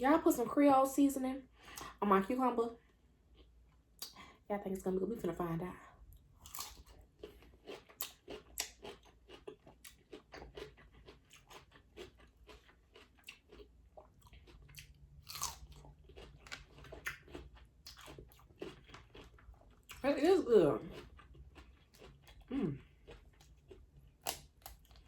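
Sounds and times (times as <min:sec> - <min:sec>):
cucumber crunching: 0:06.4 - 0:25.0.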